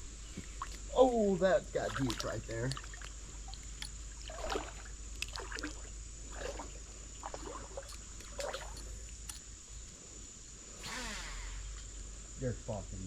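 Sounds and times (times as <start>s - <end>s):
legs wading through water: 1.7s - 9.0s.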